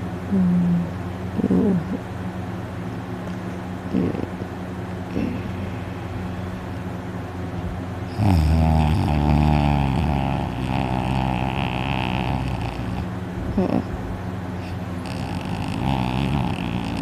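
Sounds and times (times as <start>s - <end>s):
steady low hum: 0.0s - 17.0s
man snoring loudly: 8.1s - 13.1s, 15.0s - 17.0s.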